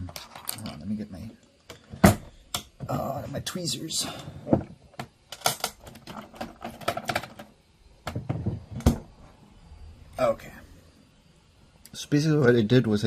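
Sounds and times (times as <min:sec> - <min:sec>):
small objects clicking on desk: 0:00.0 - 0:00.9, 0:04.9 - 0:08.5.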